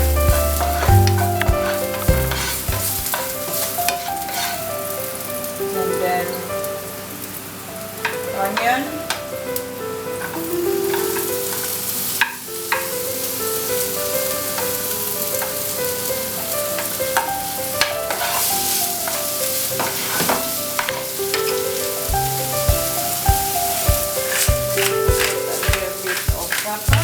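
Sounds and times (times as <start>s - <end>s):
garlic and onion sizzling in oil: 0.0s - 27.0s
quiet background music: 0.0s - 27.0s.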